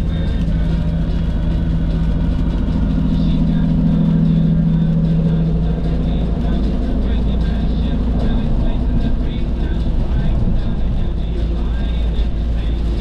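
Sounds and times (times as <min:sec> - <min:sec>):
car driving on highway: 0:00.0 - 0:13.0.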